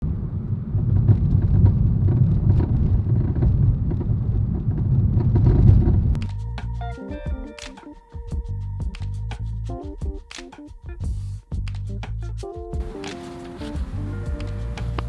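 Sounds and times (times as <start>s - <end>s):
road rumble: 0.0s - 7.0s, 11.0s - 15.0s.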